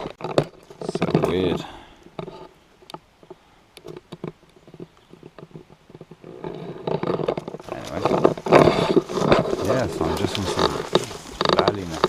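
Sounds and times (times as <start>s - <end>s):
footsteps on woodland path: 4.6s - 12.0s
loud rustling: 6.2s - 12.0s.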